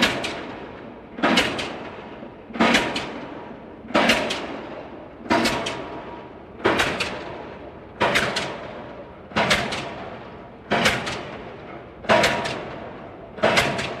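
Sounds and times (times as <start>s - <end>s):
pile driver clanging metal: 13.4s - 14.0s.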